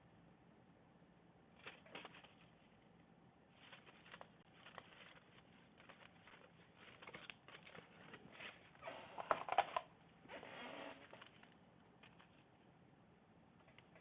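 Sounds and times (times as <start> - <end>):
rattling of small items: 1.6 - 2.7, 3.6 - 9.9, 10.9 - 12.5.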